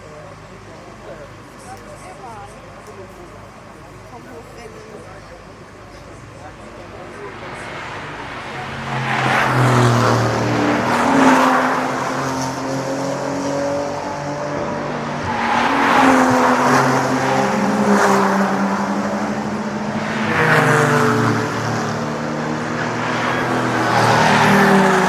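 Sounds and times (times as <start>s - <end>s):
race cars passing: 6.1s - 25.0s.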